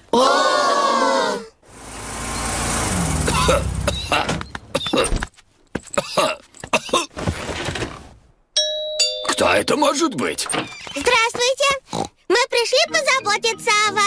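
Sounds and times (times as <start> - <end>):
cartoon car driving up: 1.7 - 4.7
short coughs: 3.2 - 5.2, 6.0 - 7.2.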